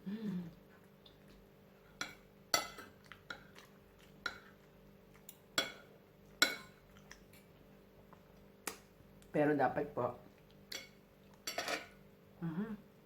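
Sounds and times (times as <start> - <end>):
cutlery clinking on a plate: 10.7 - 12.0.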